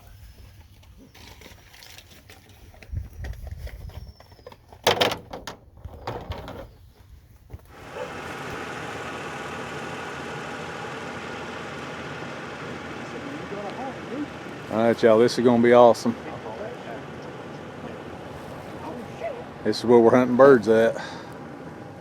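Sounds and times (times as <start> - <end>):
steady mechanical running noise: 7.4 - 22.0.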